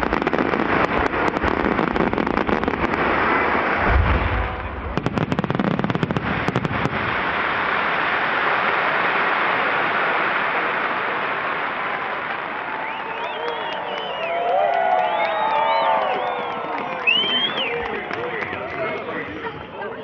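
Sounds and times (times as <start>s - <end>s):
fireworks booming: 0.0s - 13.9s
fireworks crackling pops: 0.0s - 19.7s
crowd applause and cheering: 3.5s - 5.6s, 11.1s - 20.0s.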